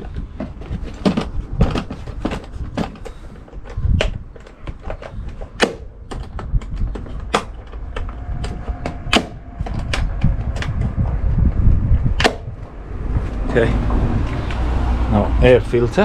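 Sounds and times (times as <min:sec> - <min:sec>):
plastic parts clicking and knocking: 0:00.0 - 0:10.9
low rumble: 0:00.0 - 0:16.0.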